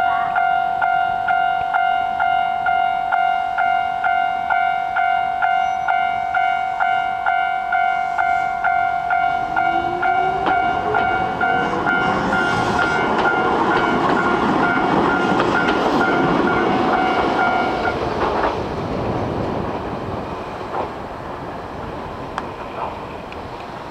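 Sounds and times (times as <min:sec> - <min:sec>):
level crossing bell clanging: 0:00.0 - 0:17.9
train clickety-clack rumble: 0:08.2 - 0:23.9.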